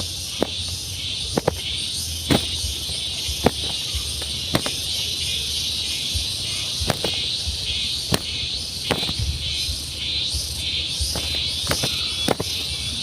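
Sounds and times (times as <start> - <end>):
insect chorus: 0.0 - 13.0
low rumble: 8.5 - 11.5.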